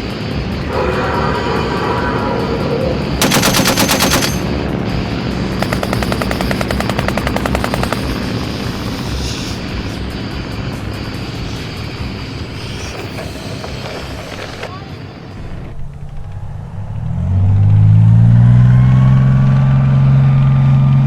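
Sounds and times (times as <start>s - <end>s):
machine-gun fire: 3.2s - 4.5s, 5.6s - 10.2s.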